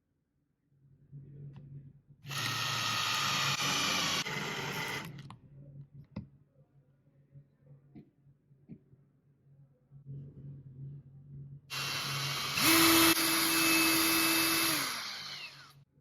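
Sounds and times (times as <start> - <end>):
cordless drill running: 2.3 - 5.2, 11.7 - 15.8.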